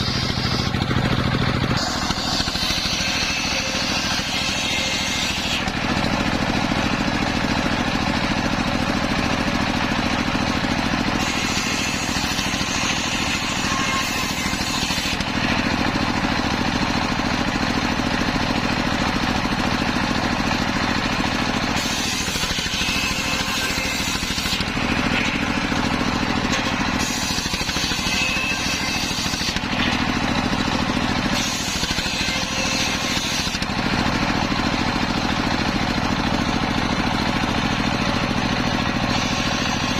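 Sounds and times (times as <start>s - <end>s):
saw blade cutting wood: 0.0s - 39.9s
sawmill engine humming: 0.0s - 39.9s.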